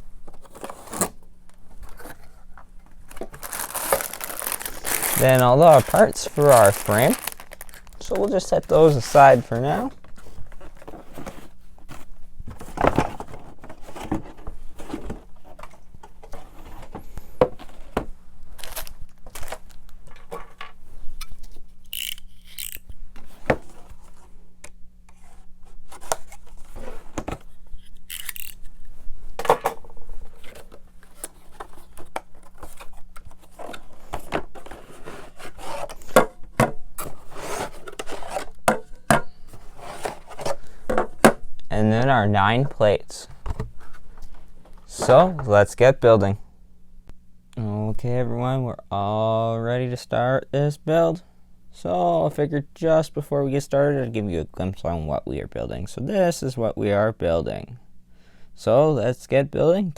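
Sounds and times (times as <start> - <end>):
plastic pieces clicking and knocking: 28.1 - 28.6.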